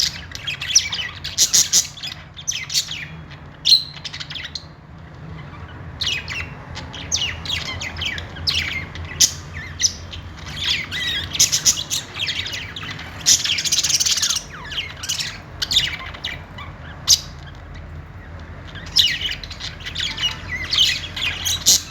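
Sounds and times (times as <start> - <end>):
budgerigars chirping: 0.0 - 21.9.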